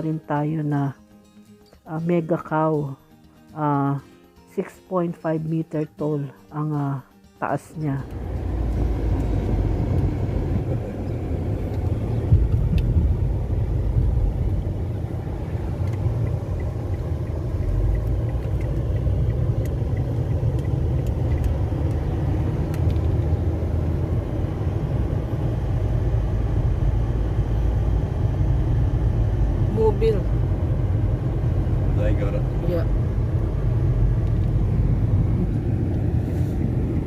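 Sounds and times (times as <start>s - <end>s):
car road and engine rumble: 7.8s - 37.0s.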